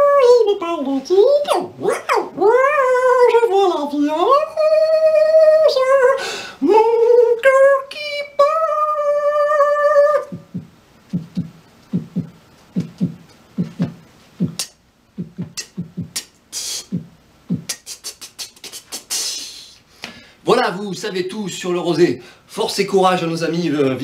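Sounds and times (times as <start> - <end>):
low mouth pops: 10.3 - 19.0
hissing mouth clicks: 10.3 - 20.2.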